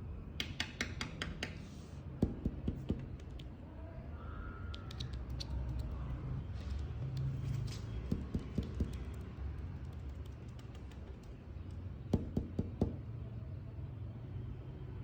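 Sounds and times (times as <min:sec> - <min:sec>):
dull knocks on hard surface: 0:12.2 - 0:13.0.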